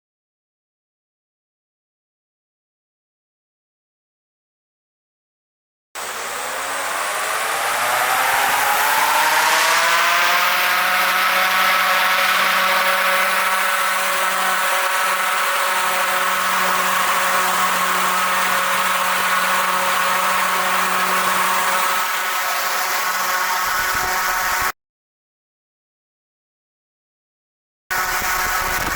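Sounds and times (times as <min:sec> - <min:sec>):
electric blower fan whine: 0:06.0 - 0:24.7, 0:27.9 - 0:28.9.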